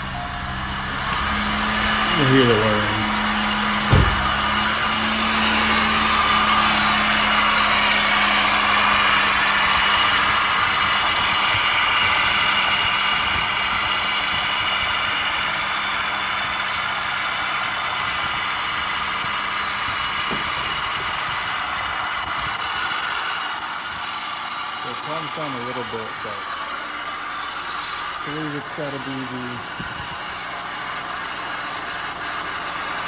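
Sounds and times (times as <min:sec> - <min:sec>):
car engine idling: 0:00.0 - 0:33.0
whirring squeal from engine: 0:00.0 - 0:33.0.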